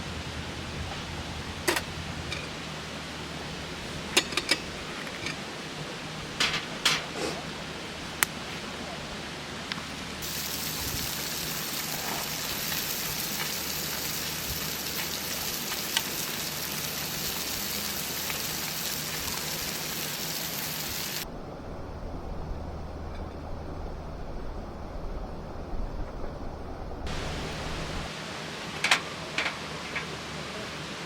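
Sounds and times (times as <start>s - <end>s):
food sizzling in a pan: 10.2s - 21.3s.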